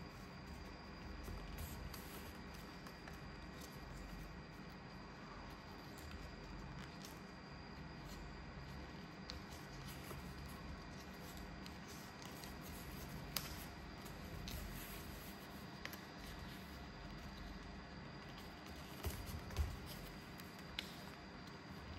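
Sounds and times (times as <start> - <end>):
light ticks of paper creasing: 0.1 - 7.4, 8.0 - 21.9
paper rustling and folding: 0.1 - 7.4, 8.0 - 21.9.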